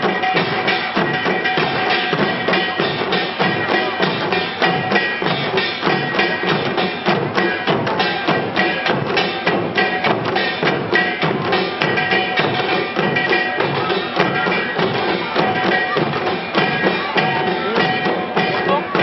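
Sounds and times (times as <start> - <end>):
hourglass drums played fast: 0.0 - 19.0.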